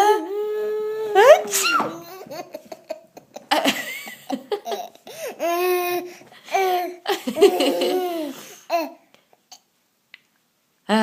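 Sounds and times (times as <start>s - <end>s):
toddler laughing: 1.2s - 9.7s.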